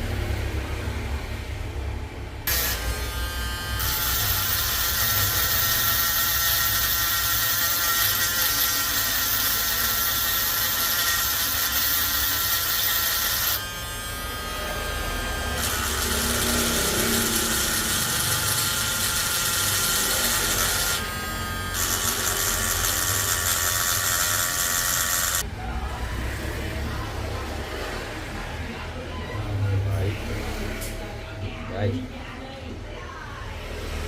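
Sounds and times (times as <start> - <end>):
electric motor tool whining: 2.5 - 25.4.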